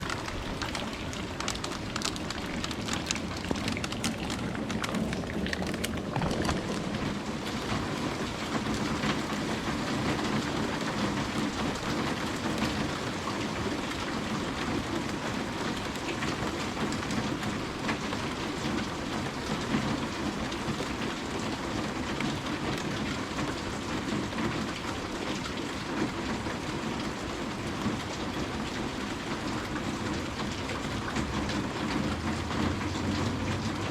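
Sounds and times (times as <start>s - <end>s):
drops ticking on a surface: 0.0s - 7.2s
steady rain falling: 0.0s - 33.9s.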